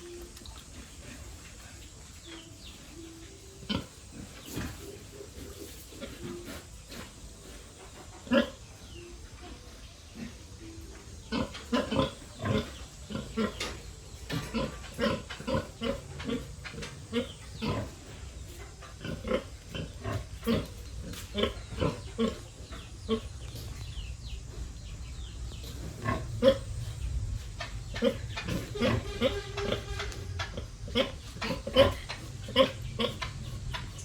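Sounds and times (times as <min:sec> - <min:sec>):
pig grunting: 0:08.2 - 0:08.7, 0:10.1 - 0:23.4, 0:25.6 - 0:27.0, 0:27.8 - 0:34.0.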